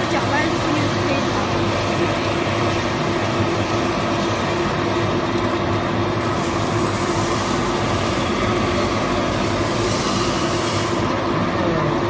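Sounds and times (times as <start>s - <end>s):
mixer motor humming: 0.0s - 12.0s.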